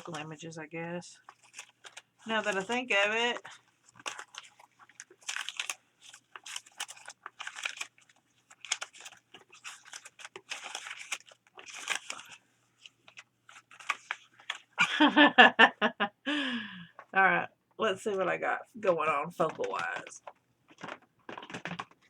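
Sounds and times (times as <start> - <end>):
paper rustling and crinkling: 0.0 - 0.4, 1.1 - 14.9, 19.0 - 22.0.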